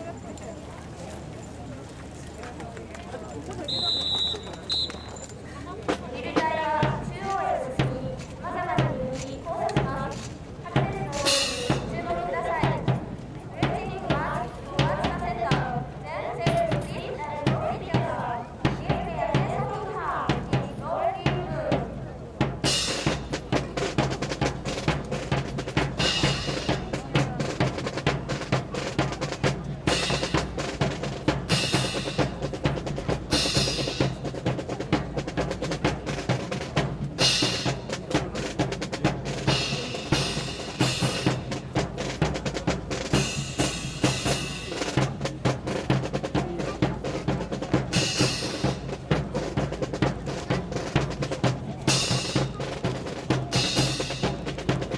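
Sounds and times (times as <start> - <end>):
snare drum rhythm: 5.9 - 54.9.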